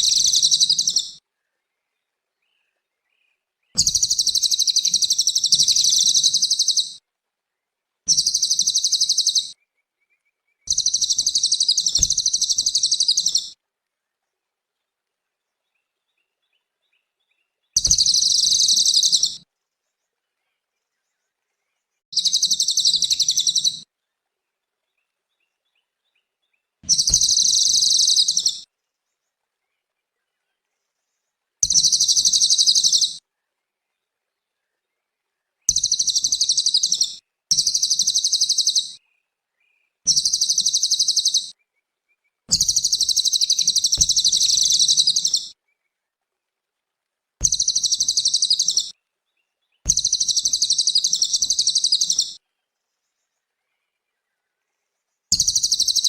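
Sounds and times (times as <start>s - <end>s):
songbird trilling: 0.0s - 1.2s, 3.8s - 7.0s, 8.1s - 9.6s, 10.7s - 13.5s, 17.8s - 19.4s, 22.2s - 23.8s, 26.8s - 28.6s, 31.6s - 33.2s, 35.7s - 39.0s, 40.1s - 41.6s, 42.5s - 45.6s, 47.4s - 48.9s, 49.9s - 52.4s, 55.3s - 56.0s.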